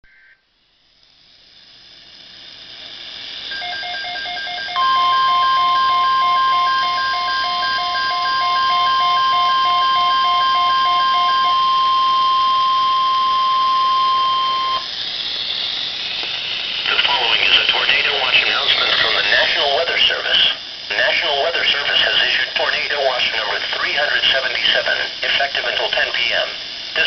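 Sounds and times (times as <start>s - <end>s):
steady warning alarm tone: 3.4s - 26.3s
rapid pulsing alert beeps: 3.5s - 14.8s
radio hiss: 10.8s - 27.0s.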